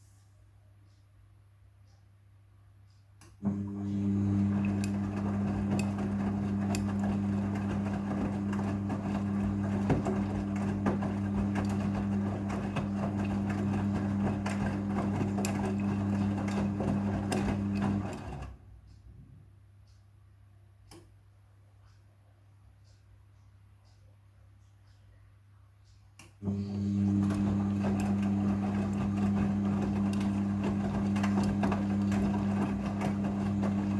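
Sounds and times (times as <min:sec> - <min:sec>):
washing machine clicks and rattles: 0:03.4 - 0:18.6, 0:26.2 - 0:33.9
washing machine motor hum: 0:03.4 - 0:18.7, 0:26.4 - 0:33.9.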